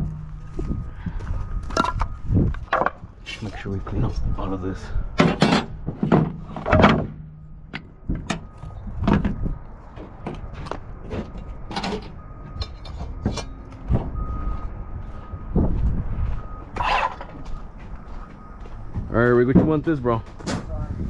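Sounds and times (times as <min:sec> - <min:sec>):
wooden boards knocking and clattering: 0:01.7 - 0:03.1, 0:05.2 - 0:07.2.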